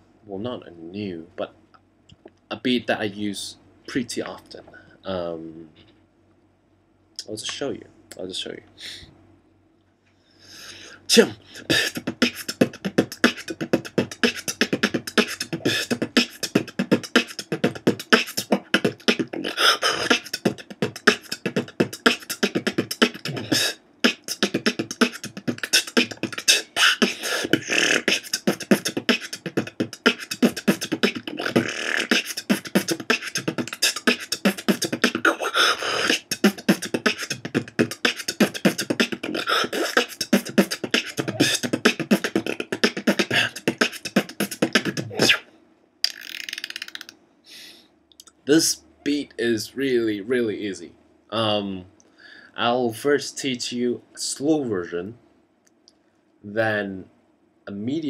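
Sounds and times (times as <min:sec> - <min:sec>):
man beatboxing: 0:11.1 - 0:45.4.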